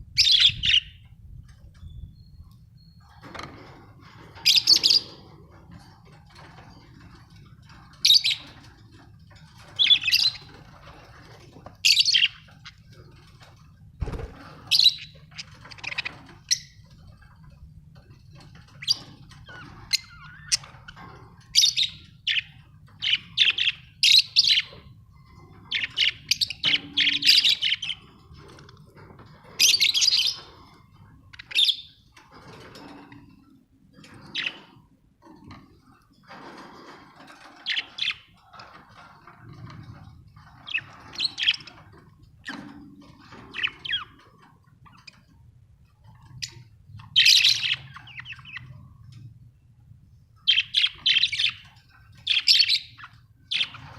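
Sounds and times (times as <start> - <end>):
budgies chirping: 0.2 - 33.3, 34.0 - 34.8, 36.3 - 45.4, 46.0 - 49.0, 50.4 - 53.9.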